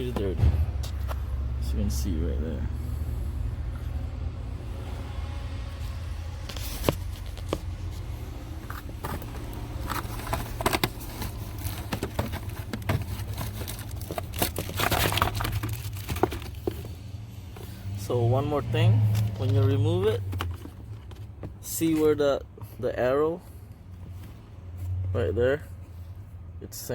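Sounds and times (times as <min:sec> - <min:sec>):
air filter crinkling and rustling: 0:00.0 - 0:02.2, 0:05.8 - 0:18.2, 0:19.0 - 0:25.0.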